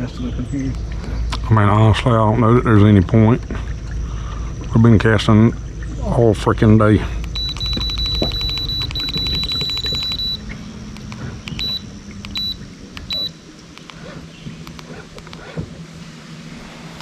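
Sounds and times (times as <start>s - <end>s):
high electronic beeper tone: 4.1s - 13.7s
short beeps: 7.2s - 13.4s
fast clicks: 7.2s - 15.7s.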